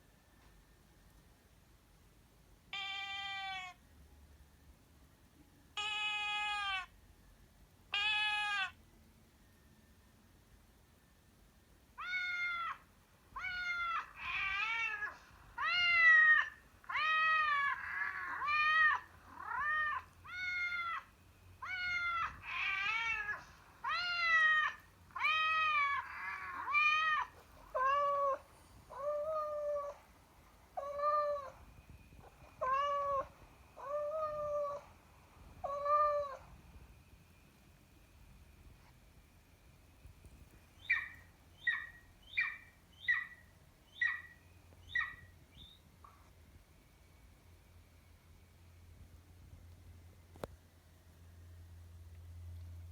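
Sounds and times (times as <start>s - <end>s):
cat meowing: 2.7s - 3.8s, 5.8s - 6.9s, 7.9s - 8.8s, 12.0s - 12.8s, 13.4s - 30.0s, 30.8s - 31.6s, 32.2s - 34.9s, 35.6s - 36.5s.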